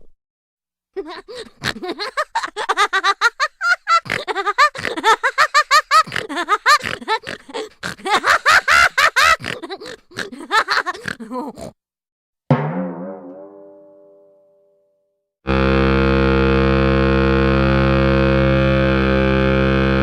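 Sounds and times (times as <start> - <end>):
high-pitched cartoon giggling: 1.0 - 11.8.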